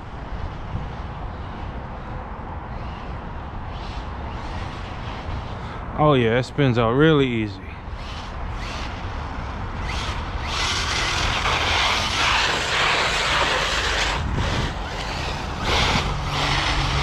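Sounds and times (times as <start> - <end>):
toy truck motor rumbling: 9.7 - 17.0
tyres spinning on snow: 9.7 - 17.0.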